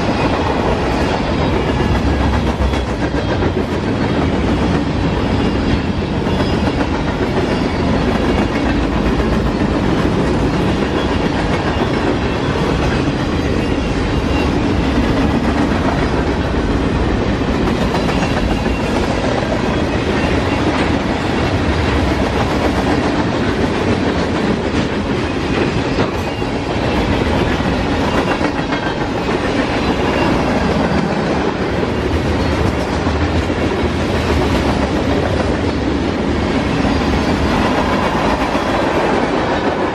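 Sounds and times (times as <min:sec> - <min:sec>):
freight train rolling past: 0:00.0 - 0:39.9.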